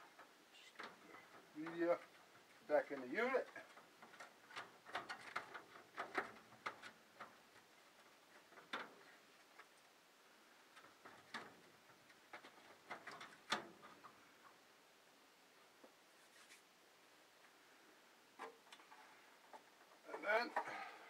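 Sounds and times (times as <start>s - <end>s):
plastic clicks and knocks: 3.6s - 7.7s.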